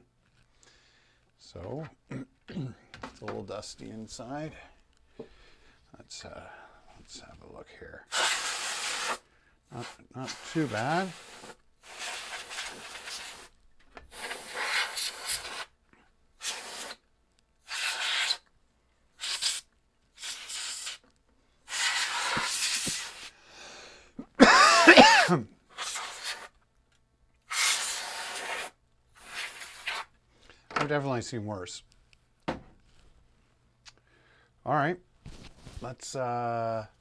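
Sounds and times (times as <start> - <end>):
blown air hissing: 8.1 - 15.7, 16.4 - 17.0, 17.7 - 18.4, 19.2 - 19.6, 20.2 - 21.0, 21.6 - 26.5, 27.5 - 30.1.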